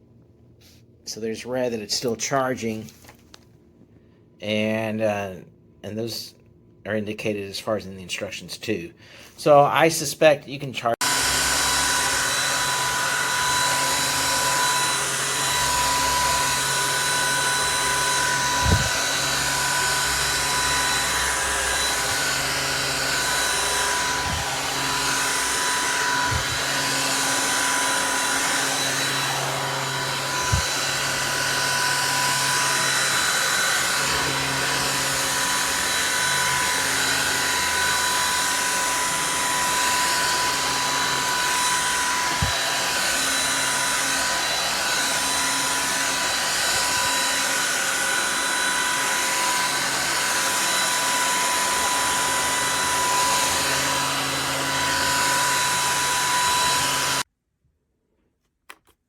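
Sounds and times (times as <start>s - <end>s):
stick vacuum motor whining: 11.0s - 57.2s.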